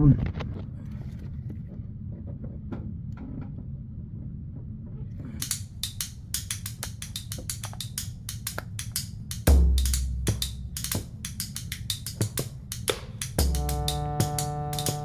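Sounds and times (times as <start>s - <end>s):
low steady hum: 0.0s - 15.0s
background music with drum beat: 5.9s - 15.0s.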